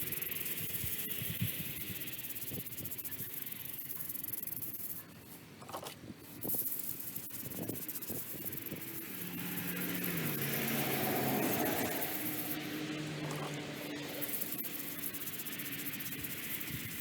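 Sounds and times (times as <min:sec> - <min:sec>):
high-pitched hiss: 0:00.0 - 0:05.4, 0:06.2 - 0:17.0.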